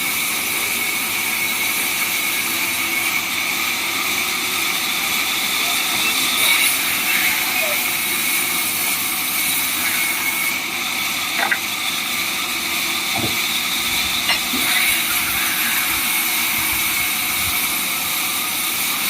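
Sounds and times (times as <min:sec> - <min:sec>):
sawmill machinery running: 0:00.0 - 0:19.0
short knocks: 0:13.2 - 0:13.5.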